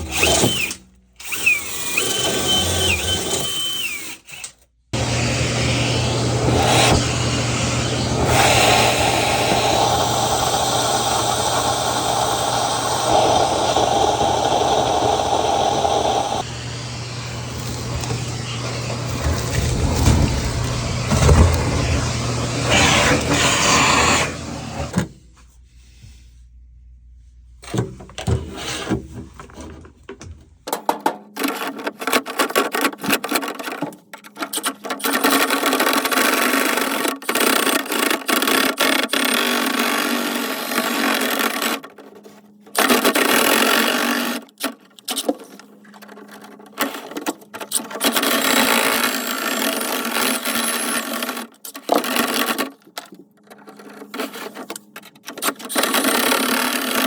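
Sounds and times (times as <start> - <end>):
small motor humming and rattling: 0.0 - 23.4.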